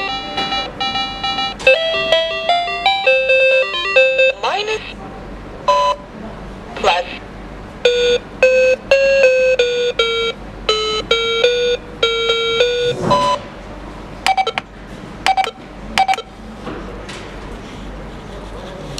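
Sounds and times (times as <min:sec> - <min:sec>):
key-press beeps: 0:00.0 - 0:04.4, 0:05.7 - 0:06.0, 0:07.9 - 0:13.4, 0:14.2 - 0:16.3
toy cash register beeping tune: 0:00.0 - 0:04.5, 0:05.7 - 0:06.0, 0:07.9 - 0:13.4, 0:14.3 - 0:14.6.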